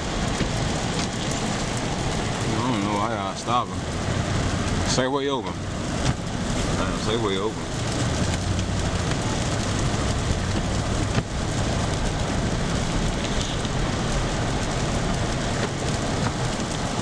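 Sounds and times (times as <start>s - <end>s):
tyres hissing on slushy road: 0.0s - 17.0s.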